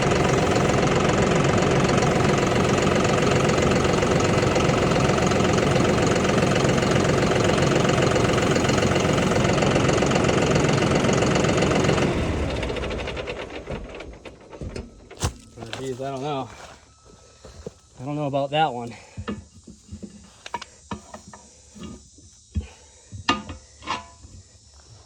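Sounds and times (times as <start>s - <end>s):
tractor engine knocking clatter: 0.0s - 16.5s.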